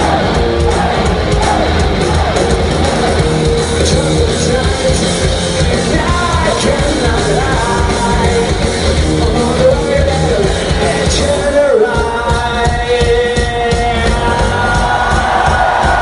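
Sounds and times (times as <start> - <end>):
person singing: 0.0 - 15.5
punk rock band music: 0.0 - 16.0.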